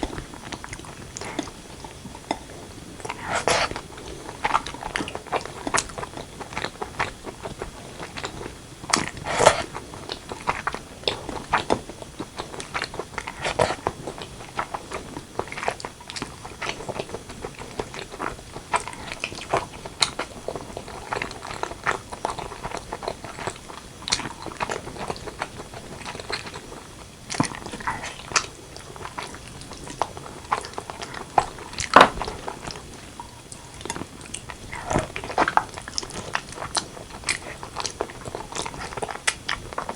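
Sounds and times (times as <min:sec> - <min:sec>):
chewing and biting food: 0:00.0 - 0:39.9
mouth clicks: 0:09.2 - 0:09.7.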